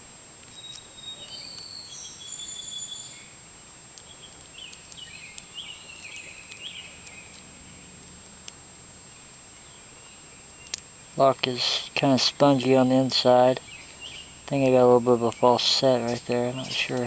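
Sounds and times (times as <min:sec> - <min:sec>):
steady high tone: 0:14.5 - 0:17.0.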